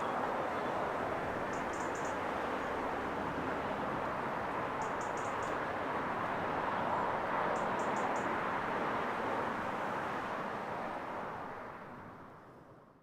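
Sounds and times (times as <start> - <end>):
road traffic hiss: 0.0 - 13.0
small bird chirping: 1.5 - 2.2, 4.8 - 5.6.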